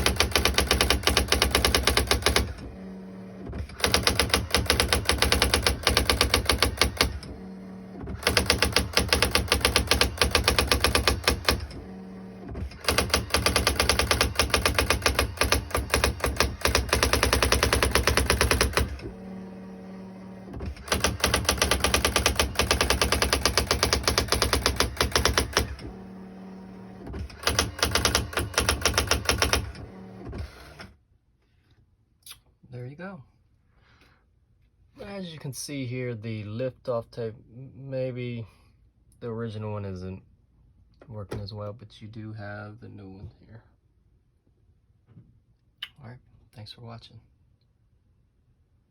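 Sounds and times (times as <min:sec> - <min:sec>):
typewriter print wheel strikes: 0:00.0 - 0:07.4, 0:08.0 - 0:19.3, 0:20.6 - 0:26.0, 0:27.1 - 0:30.9
typewriter carriage motor whine: 0:00.0 - 0:31.0.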